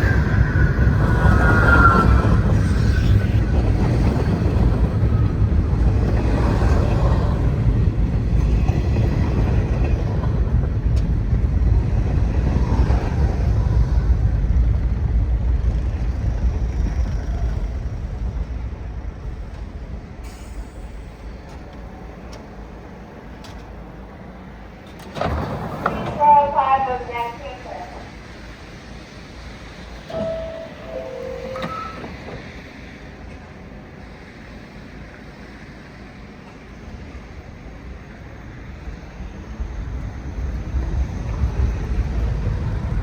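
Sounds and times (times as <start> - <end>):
high wheel squeal: 0.0 - 4.0, 30.1 - 32.4
subway train rumbling: 0.0 - 43.0.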